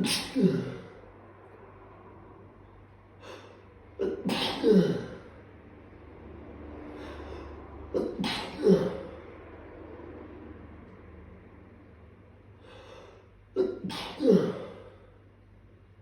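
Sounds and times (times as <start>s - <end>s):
person sneezing: 0.0s - 0.9s, 3.2s - 5.3s, 8.0s - 9.2s, 13.6s - 15.0s.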